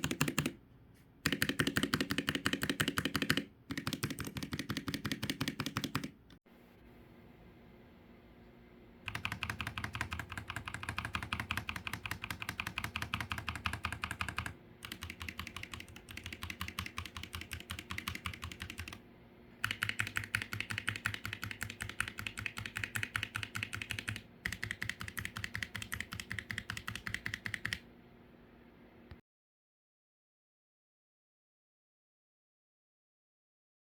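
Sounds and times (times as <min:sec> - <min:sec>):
keyboard keys clicking: 0:00.0 - 0:00.6, 0:01.2 - 0:06.4, 0:09.1 - 0:19.0, 0:19.6 - 0:27.8.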